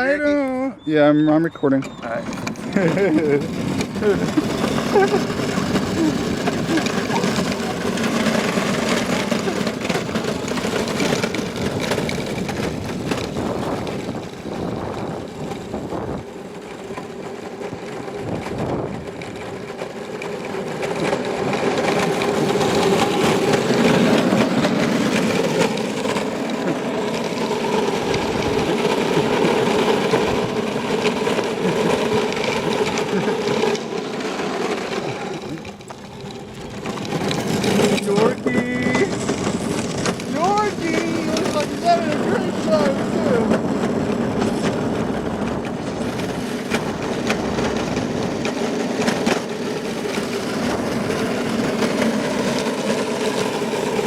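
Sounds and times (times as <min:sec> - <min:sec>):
electric motor humming: 0:02.2 - 0:54.0.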